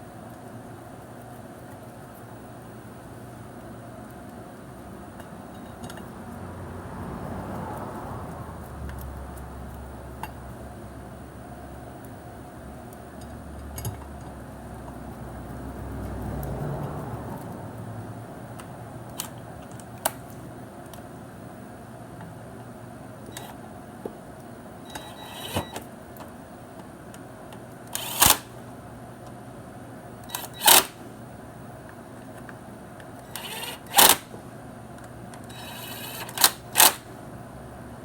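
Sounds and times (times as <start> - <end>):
cordless impact driver bursts: 27.9 - 28.5, 30.3 - 31.0, 33.3 - 34.3, 35.5 - 37.1.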